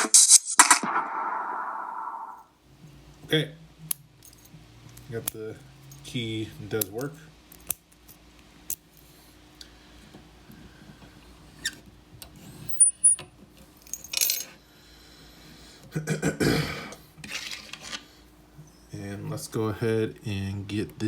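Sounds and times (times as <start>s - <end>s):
padlock metal clicks: 6.8s - 8.1s
scraping and rustling: 17.2s - 18.2s.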